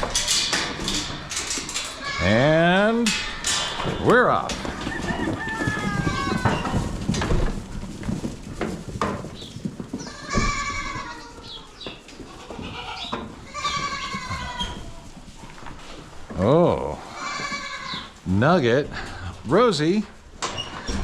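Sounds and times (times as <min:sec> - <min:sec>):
goats bleating: 0:01.9 - 0:03.0, 0:05.2 - 0:06.8, 0:10.0 - 0:15.0, 0:16.8 - 0:18.2.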